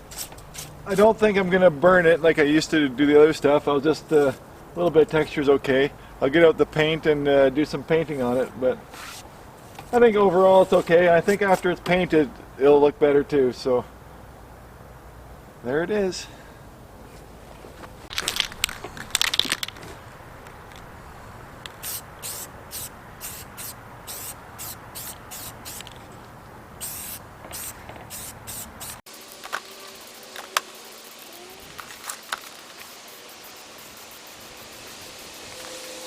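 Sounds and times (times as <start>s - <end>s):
spray paint can hissing: 21.7s - 26.0s, 26.8s - 36.0s.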